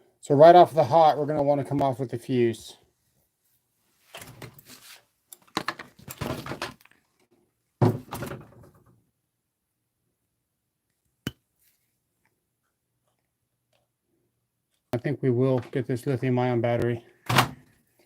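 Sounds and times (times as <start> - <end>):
objects knocking and clattering: 5.4 - 7.0, 7.8 - 9.0.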